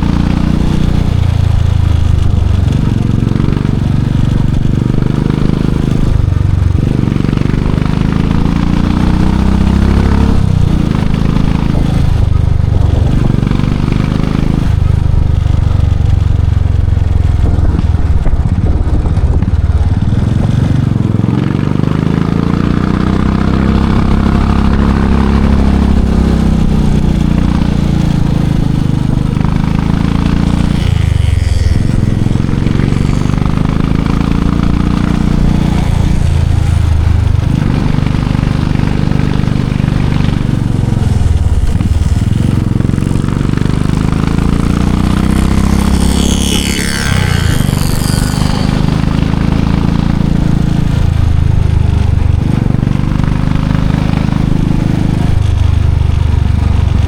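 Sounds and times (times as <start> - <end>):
motorcycle engine accelerating: 0.0 - 57.0.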